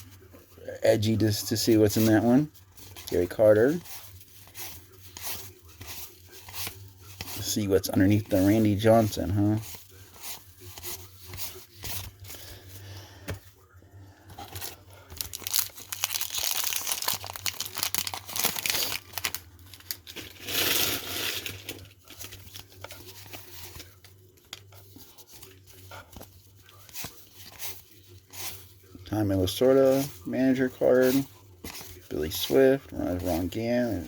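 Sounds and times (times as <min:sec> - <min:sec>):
wax paper wrapper tearing and crinkling: 0:15.0 - 0:22.7.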